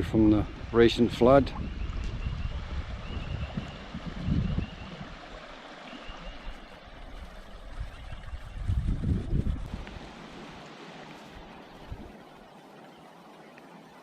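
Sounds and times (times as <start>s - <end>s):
wind on microphone: 0.0s - 12.3s
river water running: 0.0s - 14.0s.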